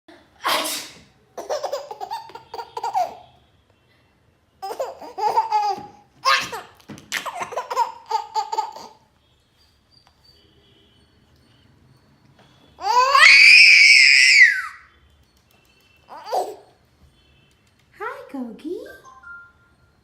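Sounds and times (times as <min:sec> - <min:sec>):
adult sneezing: 0:00.4 - 0:01.1
baby giggling: 0:01.4 - 0:03.2, 0:04.6 - 0:09.0, 0:16.1 - 0:16.6.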